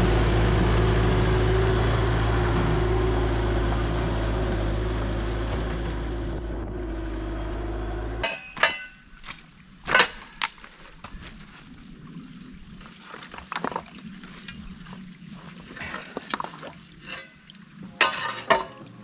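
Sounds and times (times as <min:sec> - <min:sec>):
diesel engine running: 0:00.0 - 0:08.3.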